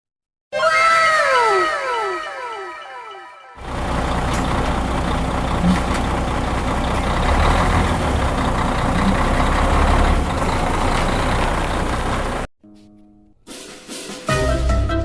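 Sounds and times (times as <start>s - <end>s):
loud steady rumbling: 3.6s - 12.5s.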